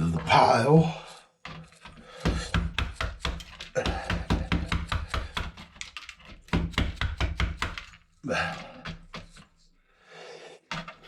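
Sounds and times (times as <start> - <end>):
tool knocking on circuit board: 2.2 - 5.7, 6.5 - 7.9.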